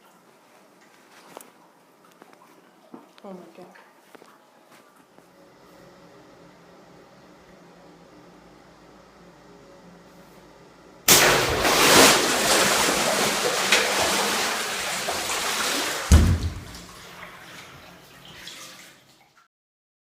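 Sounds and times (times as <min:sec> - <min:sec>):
water balloon bursting: 0:11.1 - 0:12.7, 0:16.1 - 0:16.9
water gushing and sloshing: 0:11.1 - 0:19.4
heavy thud: 0:16.1 - 0:17.0.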